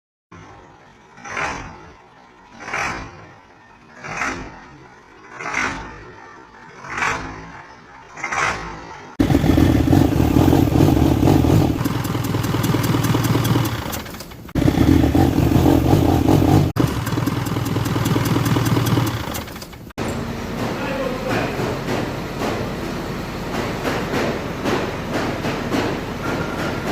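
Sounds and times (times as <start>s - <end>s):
diesel engine running loudly: 0.7s - 26.9s
rhythmic engine ticking: 9.2s - 19.9s.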